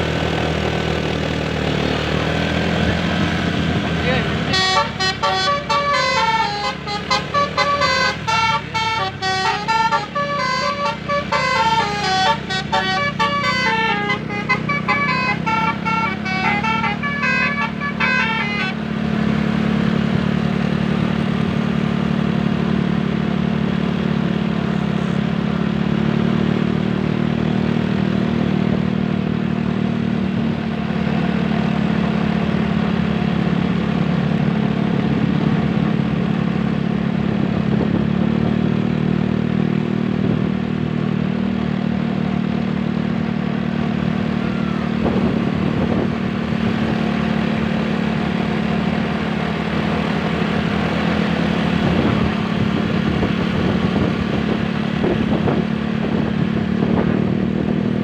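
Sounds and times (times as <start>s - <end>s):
road noise: 0.0s - 58.0s
vehicle engines running: 0.0s - 58.0s
bus musical horn melody: 4.3s - 19.4s, 44.4s - 46.0s.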